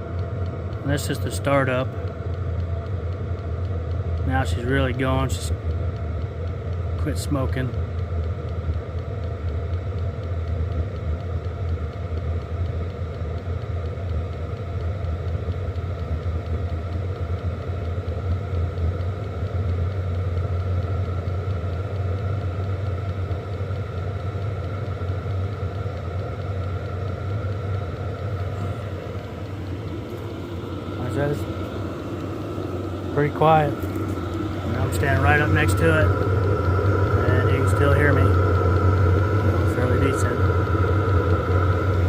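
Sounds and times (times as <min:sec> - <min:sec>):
faint high whine: 0:00.0 - 0:11.2, 0:13.6 - 0:42.0
air heater rumbling: 0:00.0 - 0:42.0.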